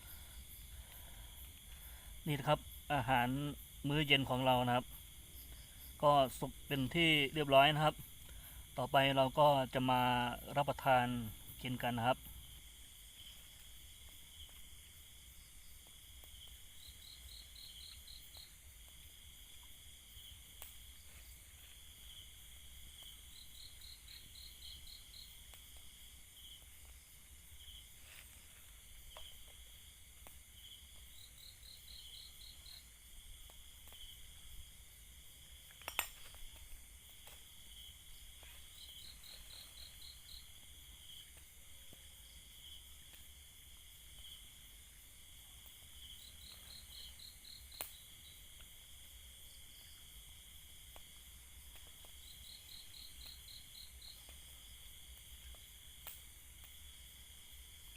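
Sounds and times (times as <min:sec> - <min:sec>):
crickets chirping: 0:00.0 - 0:57.9
insect pulsed trill: 0:00.0 - 0:57.9.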